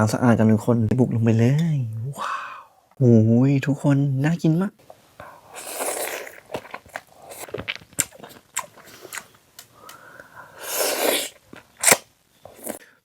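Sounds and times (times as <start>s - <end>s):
breathy slurps: 5.2s - 12.9s
wet chewing with crunchy clicks: 5.5s - 10.3s.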